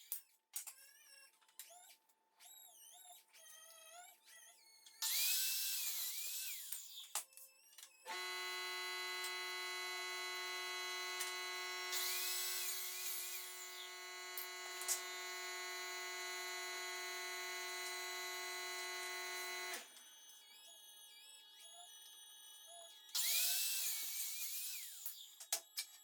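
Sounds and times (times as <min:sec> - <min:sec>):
electric power tool motor humming: 0:08.1 - 0:19.9, 0:23.2 - 0:25.2.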